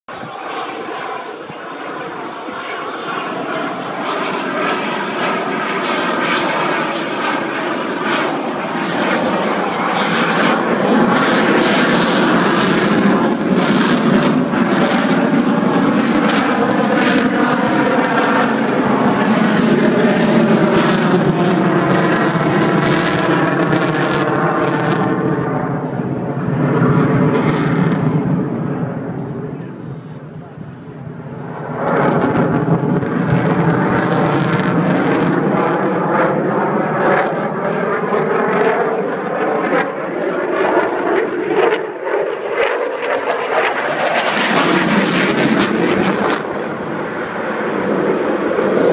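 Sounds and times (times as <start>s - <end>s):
jet engine roar: 0.1s - 48.9s.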